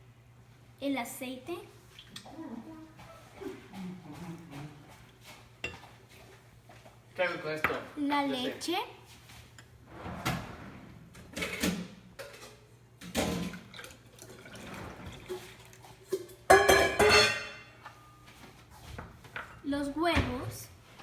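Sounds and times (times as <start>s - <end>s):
kitchenware knocking and clinking: 16.1s - 17.7s.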